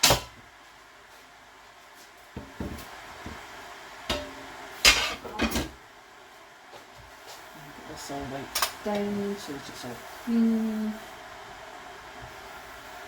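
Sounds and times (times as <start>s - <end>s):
kitchen things clattering: 4.1s - 5.8s.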